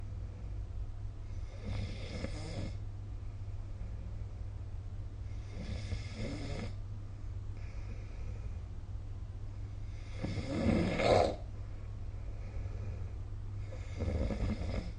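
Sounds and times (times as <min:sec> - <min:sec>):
steady low hum: 0:00.0 - 0:14.9
faint breath: 0:07.5 - 0:08.7, 0:11.4 - 0:14.1
person snoring: 0:10.0 - 0:11.4, 0:13.6 - 0:14.9.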